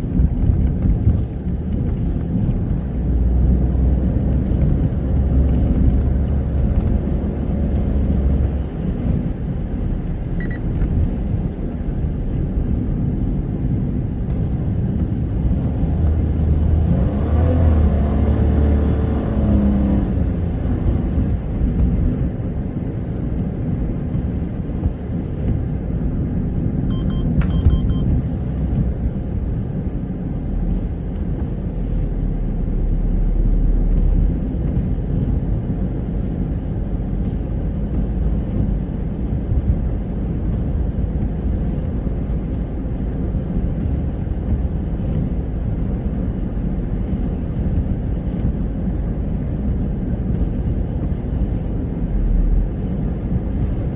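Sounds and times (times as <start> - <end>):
car engine and tyre rumble: 0.0 - 53.9.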